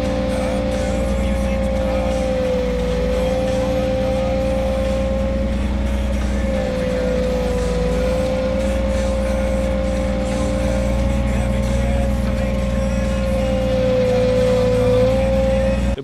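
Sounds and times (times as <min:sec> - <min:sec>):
excavator engine running: 0:00.0 - 0:16.0
hydraulic whine: 0:00.0 - 0:16.0.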